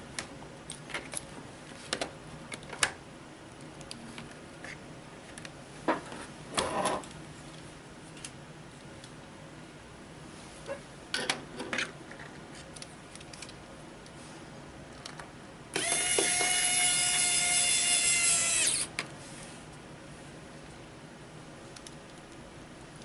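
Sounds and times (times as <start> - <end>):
electric screwdriver whining: 15.8 - 18.9.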